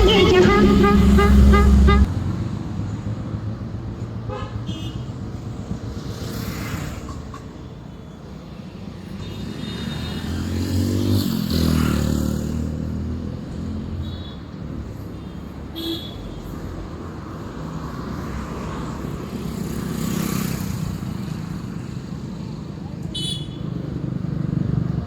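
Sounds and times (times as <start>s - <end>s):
car horn toot: 0.0s - 2.1s, 23.1s - 23.6s
vehicles passing: 0.0s - 25.0s.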